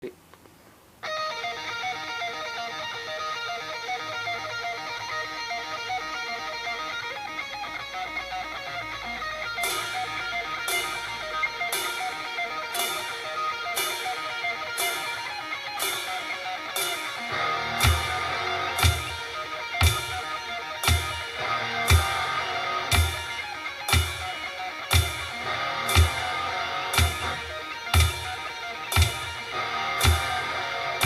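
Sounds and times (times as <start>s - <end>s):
distorted electric guitar riff: 1.0s - 31.0s
cymbal crashes: 9.6s - 31.0s.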